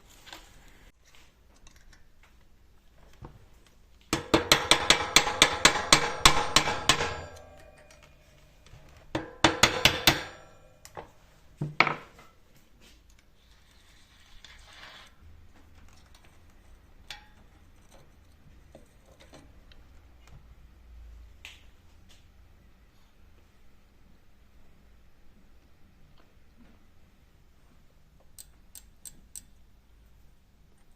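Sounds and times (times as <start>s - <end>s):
metal tools knocking and clattering: 4.2s - 8.4s.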